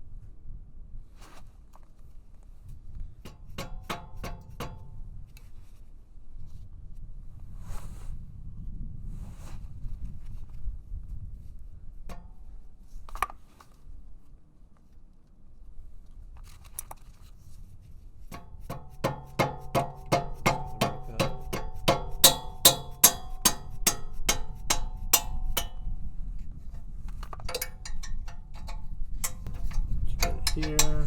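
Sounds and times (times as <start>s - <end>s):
hammer striking metal wrench: 3.3s - 5.0s, 18.3s - 25.9s, 27.5s - 31.0s
light clinks of tools: 27.3s - 31.0s.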